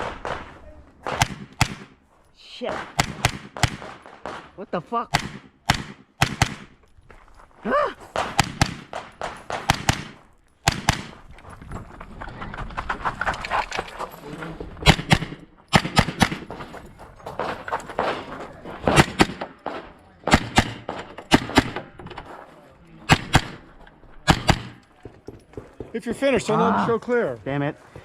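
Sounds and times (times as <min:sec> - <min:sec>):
gunshots with echo: 0:00.0 - 0:02.0, 0:02.7 - 0:06.8, 0:08.1 - 0:11.2, 0:14.8 - 0:16.6, 0:18.8 - 0:22.0, 0:23.1 - 0:24.8.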